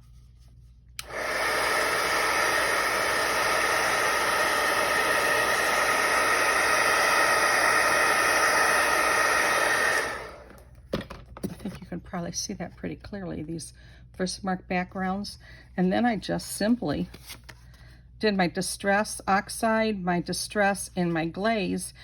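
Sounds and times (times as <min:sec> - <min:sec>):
heat gun blowing hiss: 0:01.0 - 0:10.6.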